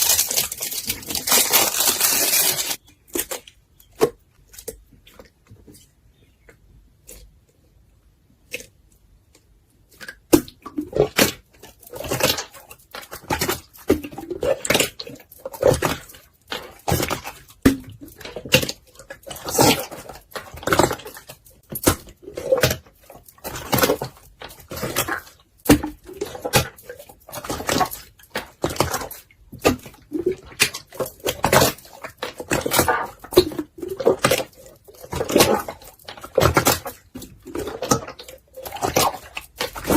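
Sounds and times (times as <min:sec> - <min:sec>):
slime squishing and clicking: 0:08.5 - 0:39.9.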